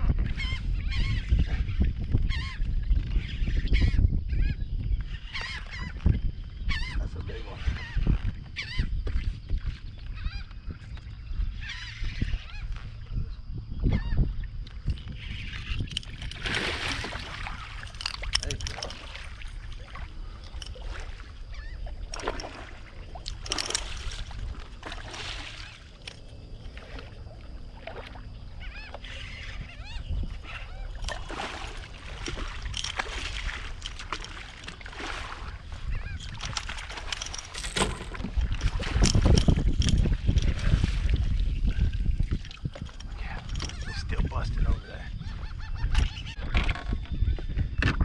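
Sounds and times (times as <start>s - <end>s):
water splashing and sloshing: 7.0s - 13.2s, 14.1s - 44.5s.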